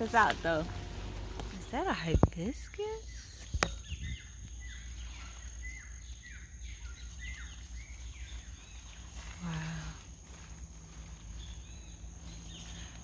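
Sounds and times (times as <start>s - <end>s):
low rumble: 0.0s - 2.4s
bird chirping: 0.0s - 9.8s, 10.9s - 13.0s.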